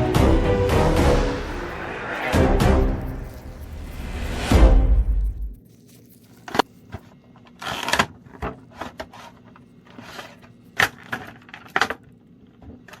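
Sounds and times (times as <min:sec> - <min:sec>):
cardboard and plastic rustling: 0:05.5 - 0:12.0.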